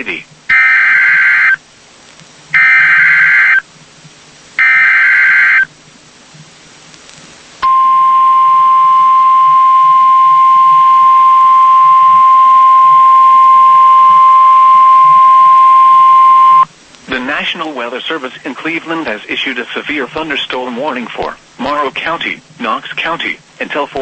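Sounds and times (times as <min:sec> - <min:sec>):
buzzy warbling data tone: 0:02.6 - 0:03.6, 0:04.6 - 0:05.7.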